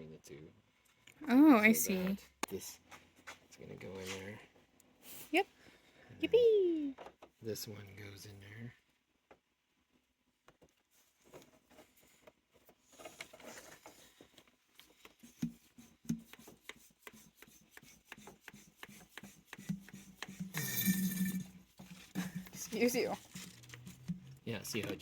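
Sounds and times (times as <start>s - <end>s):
coolant hoses rubbing and clicking: 14.8s - 25.0s
hand vacuum pump working: 17.8s - 25.0s
pump gurgling rasp: 19.2s - 24.6s.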